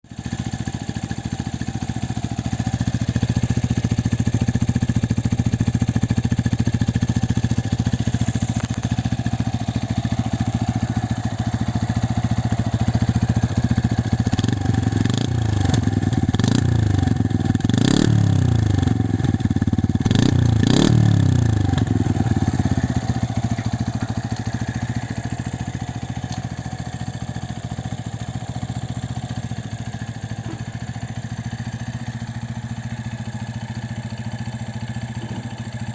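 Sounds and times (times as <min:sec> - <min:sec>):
motorcycle engine idling: 0:00.0 - 0:35.9
motorcycle throttle blips: 0:06.7 - 0:09.2, 0:19.2 - 0:25.2.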